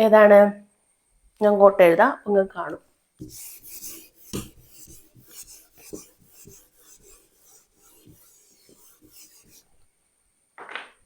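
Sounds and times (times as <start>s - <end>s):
pen knocking on surface: 3.2s - 9.6s
handwriting scratchy strokes: 3.2s - 9.7s.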